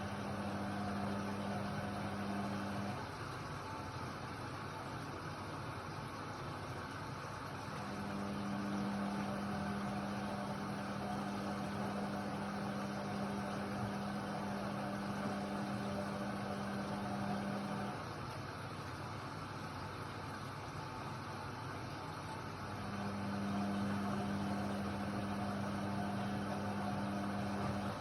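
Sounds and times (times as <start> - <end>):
steady hum: 0.0 - 3.1, 7.7 - 18.3, 20.6 - 28.0
washer-dryer whirring: 0.0 - 28.0.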